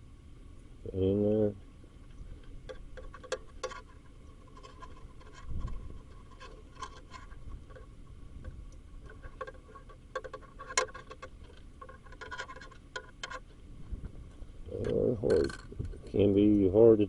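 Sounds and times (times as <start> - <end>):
tool scraping plastic: 2.4 - 7.9, 9.0 - 13.5.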